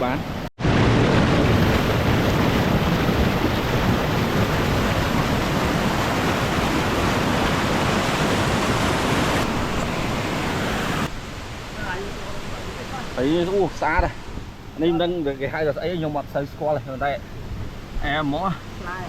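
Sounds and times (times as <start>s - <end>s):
waterfall rushing: 0.6s - 14.3s.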